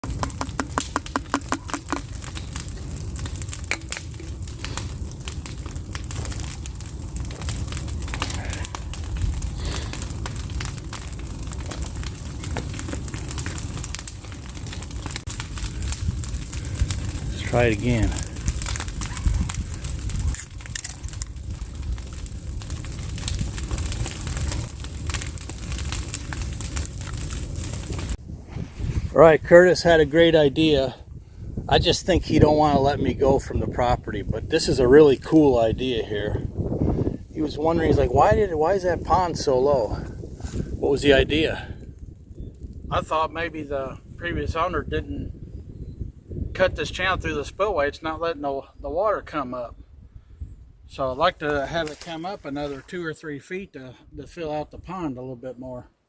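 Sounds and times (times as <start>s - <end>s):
fast run of clicks: 0.0s - 2.2s
crackling and popping: 0.0s - 45.7s, 50.9s - 53.2s
low fire rumble: 0.0s - 55.9s.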